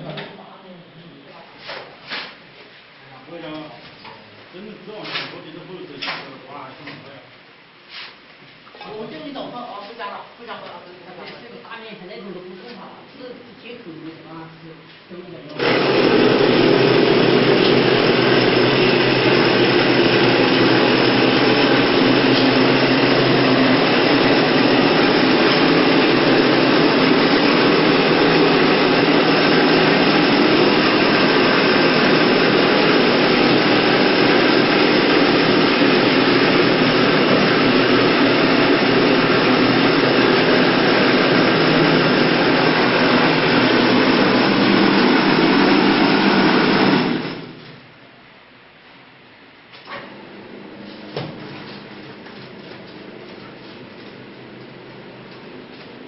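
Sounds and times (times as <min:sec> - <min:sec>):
machine humming: 0:15.5 - 0:47.8, 0:50.0 - 0:56.0.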